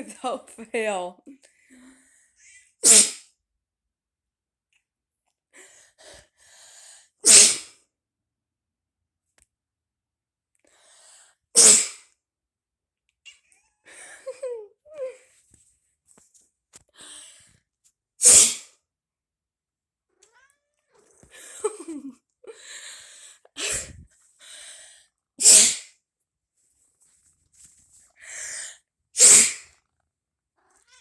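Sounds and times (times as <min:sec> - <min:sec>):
person fake sneezing: 0:02.8 - 0:03.2, 0:07.2 - 0:07.8, 0:11.6 - 0:12.0, 0:18.2 - 0:18.7, 0:23.6 - 0:24.0, 0:25.4 - 0:25.9, 0:29.2 - 0:29.7
cat meowing: 0:20.1 - 0:21.0, 0:30.6 - 0:31.0.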